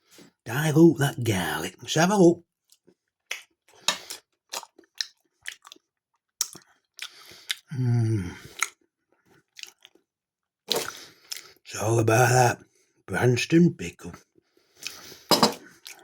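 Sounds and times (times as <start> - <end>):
wet chewing and crunching: 2.6 - 7.7, 8.4 - 10.1, 10.7 - 11.6, 14.7 - 16.0.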